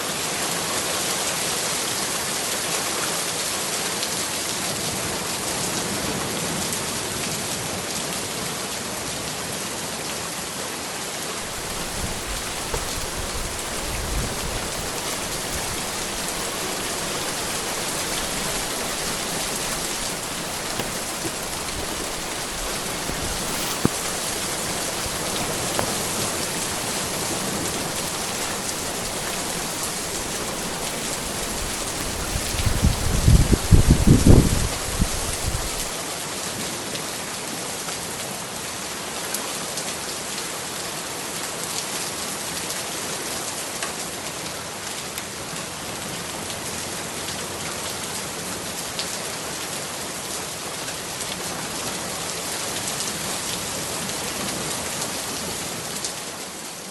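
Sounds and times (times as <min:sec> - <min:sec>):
heavy rain falling: 0:11.4 - 0:36.0
sharp tap of raindrop: 0:11.4 - 0:36.0.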